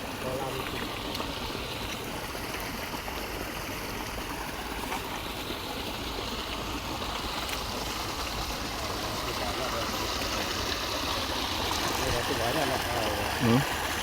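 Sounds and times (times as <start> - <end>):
running water: 0.0 - 14.0.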